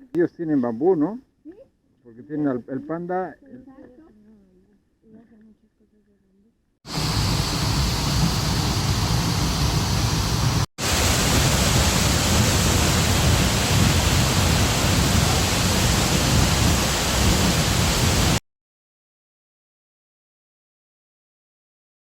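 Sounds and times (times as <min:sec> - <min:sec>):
waterfall rushing: 0:06.9 - 0:18.4.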